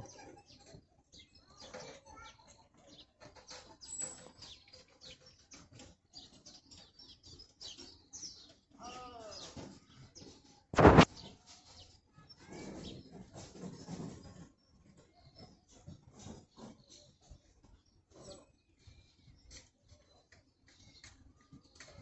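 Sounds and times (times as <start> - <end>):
small birds chirping: 0.0 - 22.0
loud gunshot: 10.8 - 11.1.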